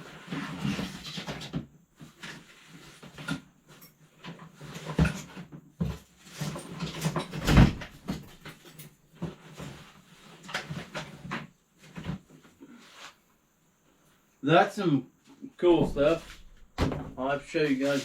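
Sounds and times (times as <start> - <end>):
loud thump: 15.7 - 17.2
objects knocking and scraping: 15.7 - 18.0.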